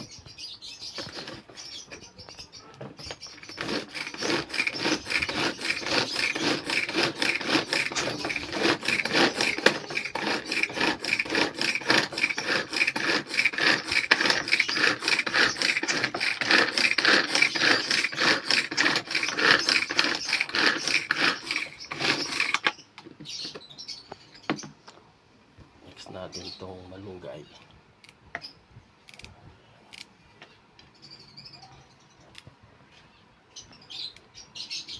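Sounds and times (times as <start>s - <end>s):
rasping strokes on vegetables: 3.4s - 22.6s.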